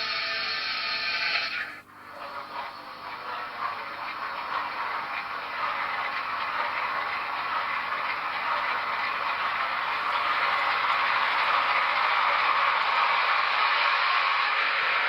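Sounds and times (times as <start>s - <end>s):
diesel locomotive sound: 0.0s - 15.0s
model train wheels clattering: 1.5s - 13.1s.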